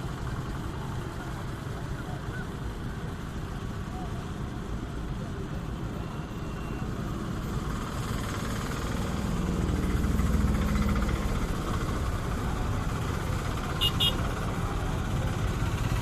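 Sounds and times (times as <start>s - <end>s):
engine rumbling: 7.0s - 16.0s.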